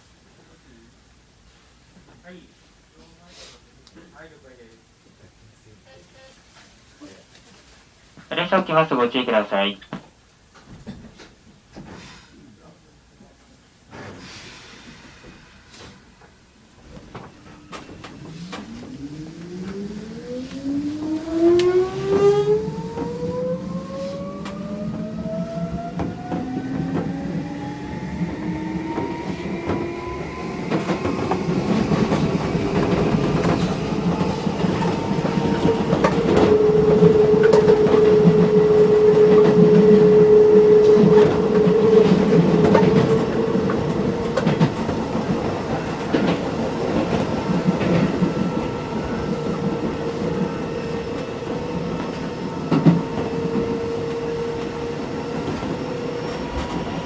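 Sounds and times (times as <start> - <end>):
electric train motor whine: 16.8 - 57.0.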